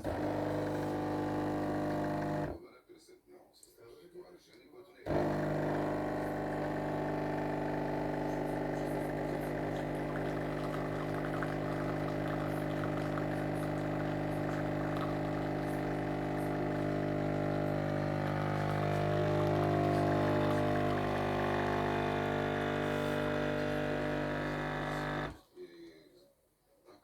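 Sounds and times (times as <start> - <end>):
espresso machine pump buzzing: 0.0 - 2.6, 5.1 - 25.4
water pouring: 5.2 - 25.4.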